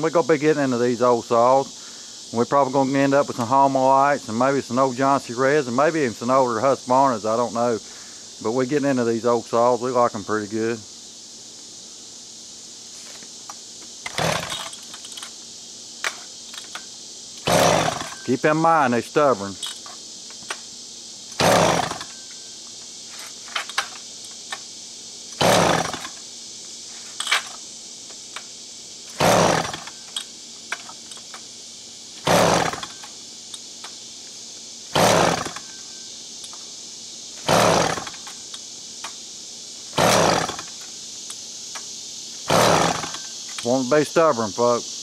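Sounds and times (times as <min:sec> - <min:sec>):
chainsaw pull-start whirr: 0:14.0 - 0:15.3, 0:16.1 - 0:18.4, 0:21.3 - 0:22.3, 0:25.3 - 0:26.2, 0:29.0 - 0:31.4, 0:32.2 - 0:33.2, 0:34.9 - 0:35.9, 0:37.4 - 0:38.5, 0:39.9 - 0:40.8, 0:42.4 - 0:43.6.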